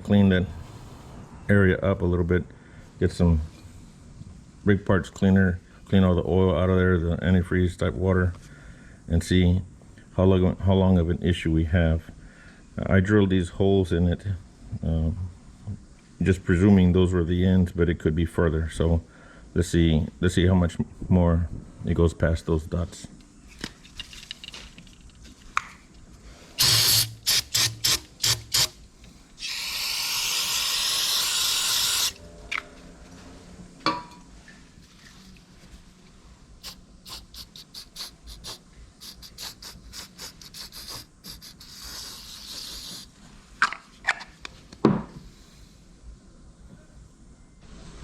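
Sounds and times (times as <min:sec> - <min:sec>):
aerosol can spraying: 0:26.6 - 0:28.8, 0:29.4 - 0:32.2, 0:36.6 - 0:43.1.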